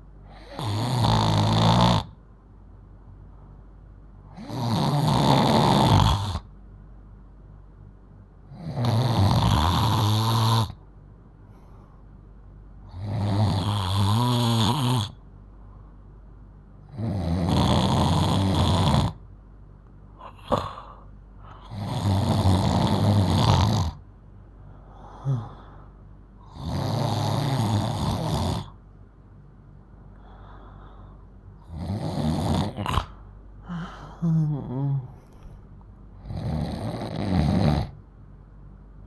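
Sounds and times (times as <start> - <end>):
girl snoring loudly: 0.3 - 2.2, 4.3 - 6.5, 8.5 - 10.8, 12.9 - 15.2, 16.9 - 19.2, 20.2 - 24.0, 25.0 - 25.7, 26.4 - 28.8, 31.6 - 35.2, 36.2 - 38.0.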